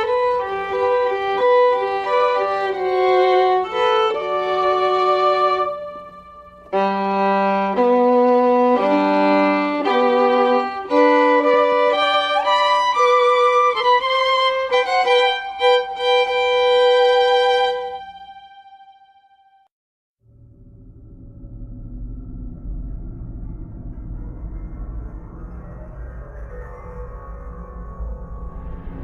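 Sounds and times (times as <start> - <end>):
violin melody: 0.0 - 19.6.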